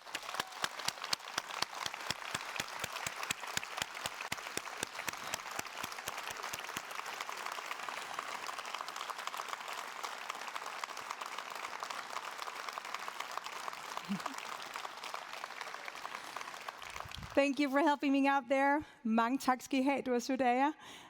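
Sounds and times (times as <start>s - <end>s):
audience applauding: 0.0s - 17.8s.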